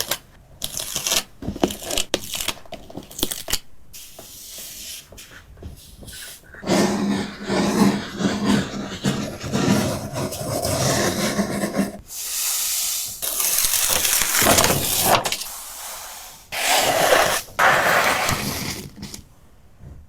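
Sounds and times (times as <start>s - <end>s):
gritty hissing and scraping: 3.9s - 19.2s.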